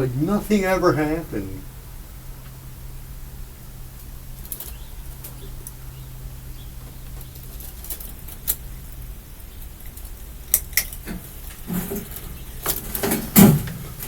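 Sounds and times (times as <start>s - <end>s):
ceiling fan motor hum: 0.0s - 14.0s
clicks and knocks of fan handling: 9.9s - 14.0s.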